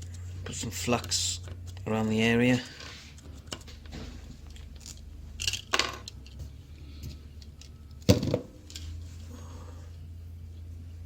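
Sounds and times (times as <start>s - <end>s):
low hum: 2.8s - 11.0s
tools clinking and clicking: 4.4s - 9.0s.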